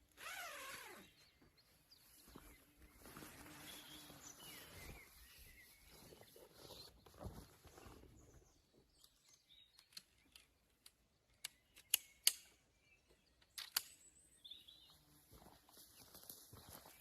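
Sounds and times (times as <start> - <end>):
sharp clicks: 9.7 - 12.6, 13.4 - 14.0.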